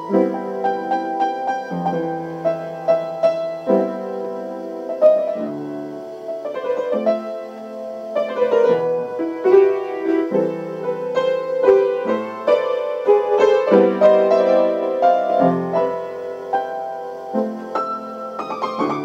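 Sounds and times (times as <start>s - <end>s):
piano melody over chords: 0.0s - 19.0s.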